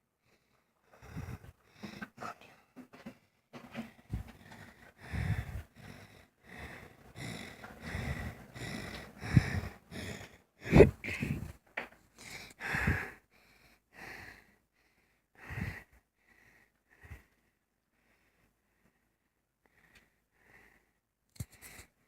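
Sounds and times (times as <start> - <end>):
person breathing hard: 0.2 - 11.6, 12.2 - 22.0
person sniffing: 4.1 - 11.5.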